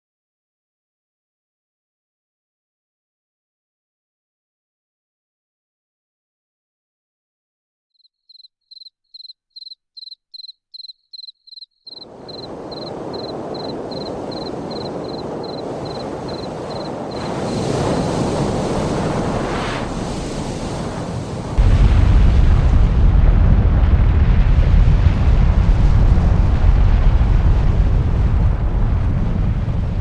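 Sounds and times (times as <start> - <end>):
volcanic eruption rumble: 12.0 - 30.0.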